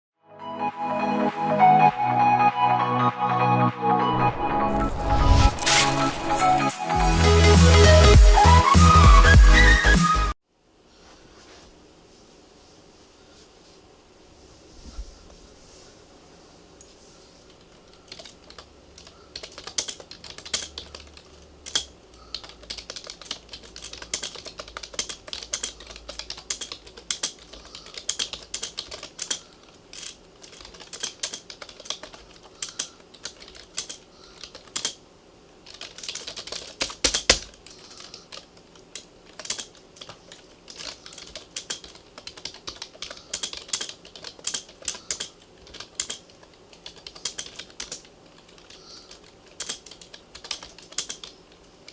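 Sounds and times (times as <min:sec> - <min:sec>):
keyboard keystrokes clicking: 0:18.1 - 0:35.0, 0:35.7 - 0:51.9.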